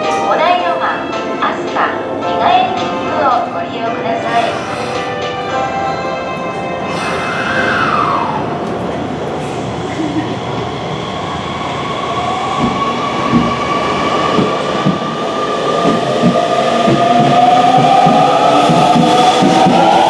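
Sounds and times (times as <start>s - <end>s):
train motors whining: 4.2s - 13.6s.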